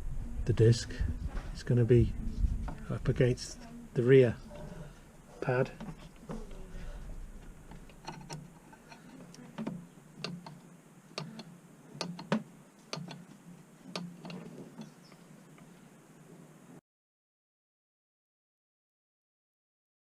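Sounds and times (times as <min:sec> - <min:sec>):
screwdriver clicking on metal: 0:07.7 - 0:10.6, 0:11.2 - 0:13.3.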